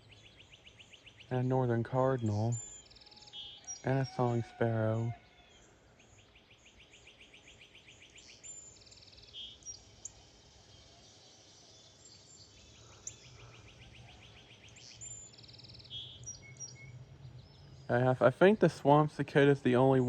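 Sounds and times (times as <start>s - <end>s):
songbirds singing: 0.0s - 20.0s.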